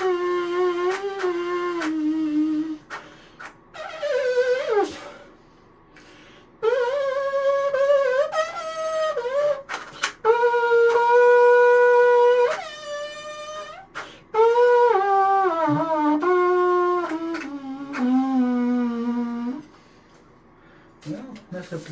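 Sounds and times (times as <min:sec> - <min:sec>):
plastic trumpet playing a tune: 0:00.0 - 0:03.0, 0:03.8 - 0:05.2, 0:06.6 - 0:19.6.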